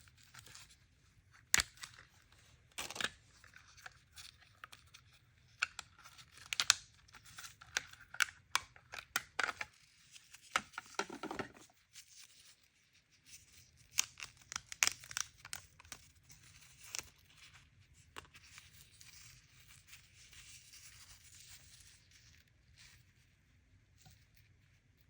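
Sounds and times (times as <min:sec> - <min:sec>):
packaging torn and crinkled: 0:13.9 - 0:17.2.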